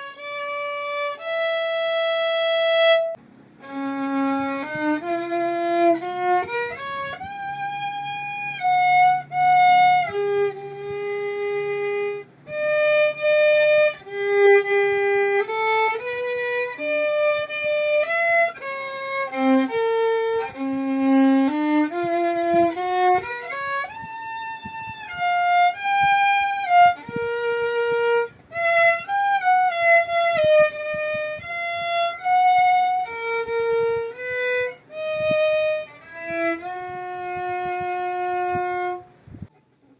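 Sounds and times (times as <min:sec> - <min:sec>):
solo violin melody: 0:00.0 - 0:39.5.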